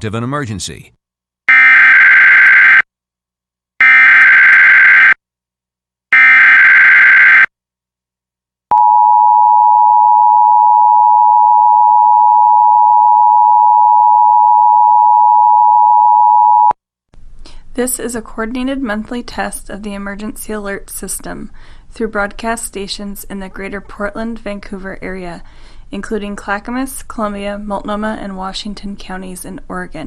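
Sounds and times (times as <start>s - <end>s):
two-tone alarm tone: 1.5s - 2.8s, 3.8s - 5.2s, 6.2s - 7.5s, 8.7s - 16.7s.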